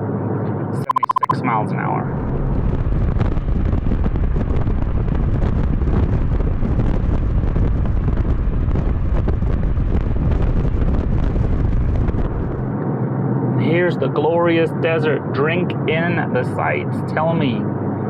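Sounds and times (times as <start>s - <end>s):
road and drivetrain rumble: 2.2s - 13.7s
wind buffeting microphone: 2.5s - 12.7s.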